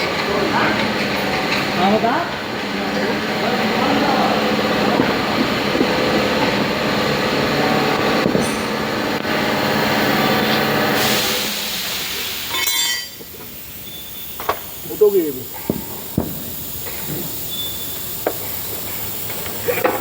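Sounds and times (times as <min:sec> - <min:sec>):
heavy vehicle engine rumble: 0:00.0 - 0:12.6.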